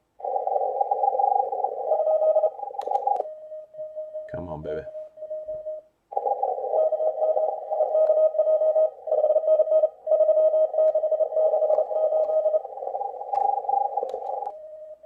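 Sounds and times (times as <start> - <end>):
morse code tone: 0.9 - 15.0.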